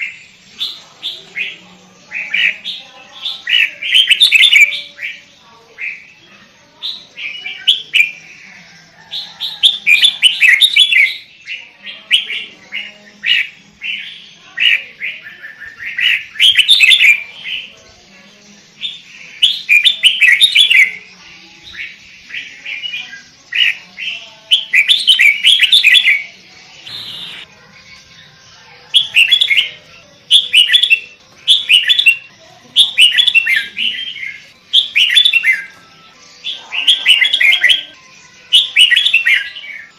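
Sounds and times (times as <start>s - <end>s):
bird chirping: 18.9s - 39.9s.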